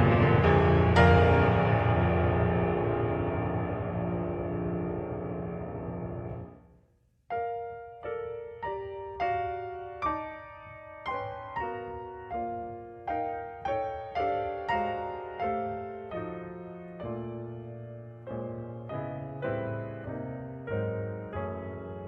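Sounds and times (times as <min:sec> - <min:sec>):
slow gentle piano chords: 0:00.0 - 0:06.6, 0:07.3 - 0:22.0.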